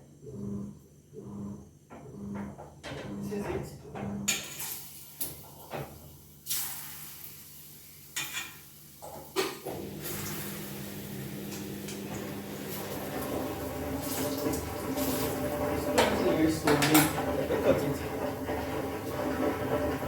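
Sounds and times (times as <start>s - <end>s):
kitchen knocks and clatters: 1.9s - 6.2s, 8.2s - 10.3s, 11.5s - 20.0s.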